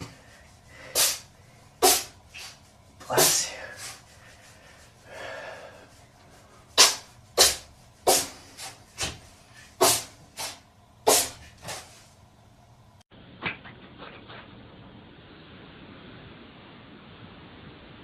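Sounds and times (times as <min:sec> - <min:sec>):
cat sneezing: 0:01.0 - 0:01.2, 0:01.8 - 0:02.6, 0:06.8 - 0:08.4, 0:09.8 - 0:11.8.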